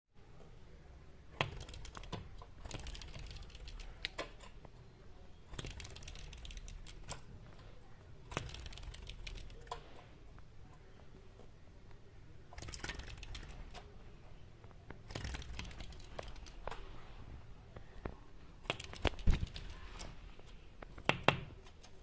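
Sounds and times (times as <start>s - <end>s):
bird pecking at window: 1.3s - 4.7s, 5.4s - 10.0s, 12.5s - 17.0s, 17.8s - 22.0s.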